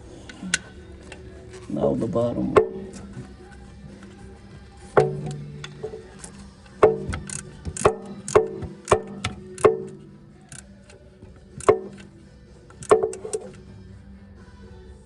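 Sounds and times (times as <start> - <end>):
wrench clinking on bolt: 5.0 - 11.0, 11.6 - 12.1, 12.7 - 13.6.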